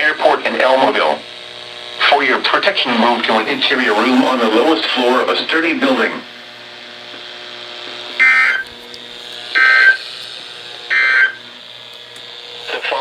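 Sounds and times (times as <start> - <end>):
faint radio hiss: 2.0 - 6.3, 7.8 - 13.0
warbling digital data tones: 8.2 - 8.7, 9.6 - 10.0, 10.9 - 11.4.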